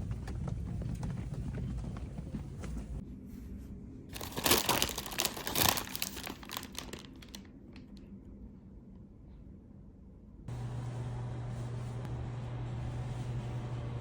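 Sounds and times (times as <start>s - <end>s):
crinkling and rustling: 4.1s - 8.0s.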